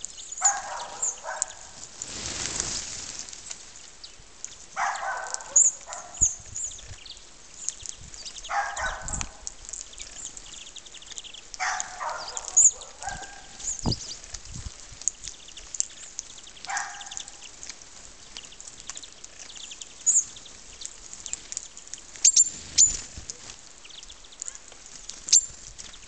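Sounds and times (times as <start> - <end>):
harsh bird calls: 0.2 - 1.7, 7.7 - 14.2.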